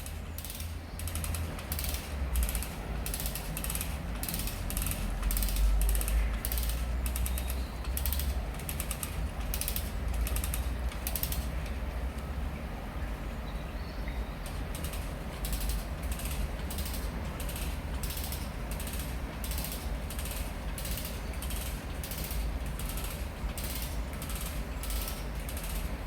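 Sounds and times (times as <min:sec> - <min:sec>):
winch ratchet clicking: 0:00.0 - 0:12.3, 0:14.4 - 0:26.0.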